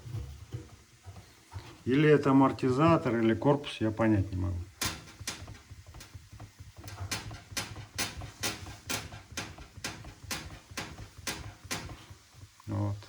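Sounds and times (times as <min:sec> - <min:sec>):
washing machine drum squeaking: 0:04.8 - 0:12.0.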